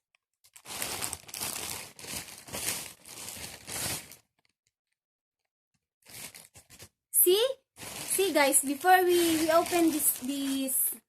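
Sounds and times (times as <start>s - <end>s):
plastic wrapping crinkling: 0.5s - 4.5s, 6.0s - 11.0s.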